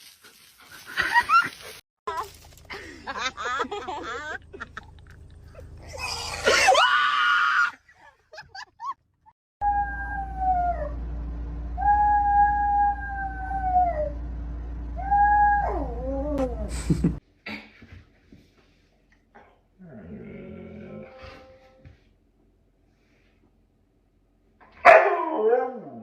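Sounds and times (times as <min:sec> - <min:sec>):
harsh rising cry: 0:05.4 - 0:07.8, 0:09.6 - 0:16.8
dog howling: 0:09.6 - 0:11.0, 0:11.8 - 0:14.2, 0:15.0 - 0:16.7.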